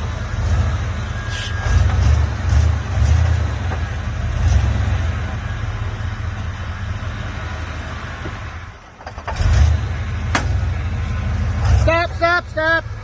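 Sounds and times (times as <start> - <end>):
engine low rumble: 0.0 - 13.0.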